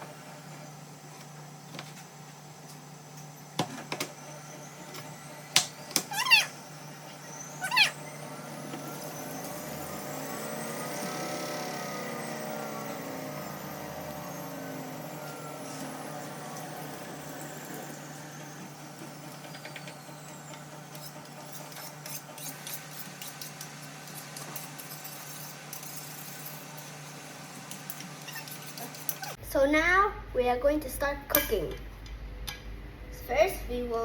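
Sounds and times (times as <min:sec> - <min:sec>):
motor vehicle passing by: 0:07.9 - 0:19.3.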